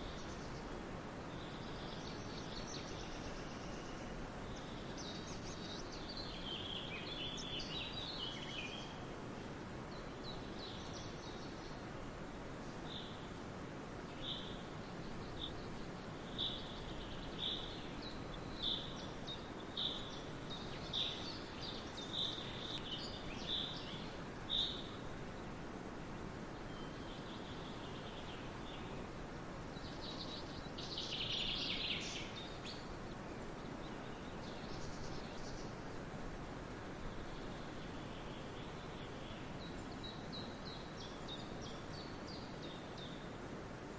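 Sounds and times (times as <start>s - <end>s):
steady background hiss: 0.0s - 43.9s
birds calling: 14.1s - 25.5s.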